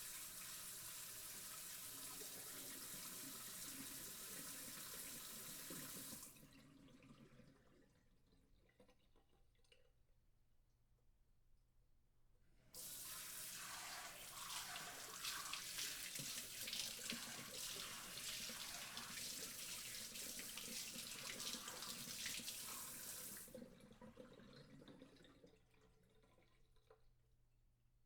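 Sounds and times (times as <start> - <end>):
water trickling and dripping: 12.8 - 27.2.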